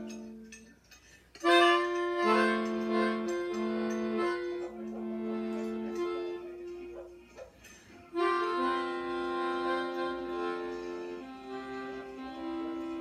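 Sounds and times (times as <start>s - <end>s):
melodica chords: 0.0s - 0.6s, 1.4s - 13.0s.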